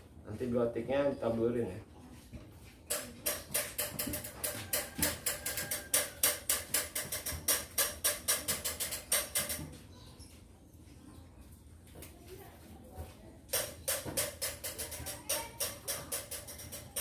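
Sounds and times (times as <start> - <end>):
utensil tapping rapidly: 13.5 - 17.0.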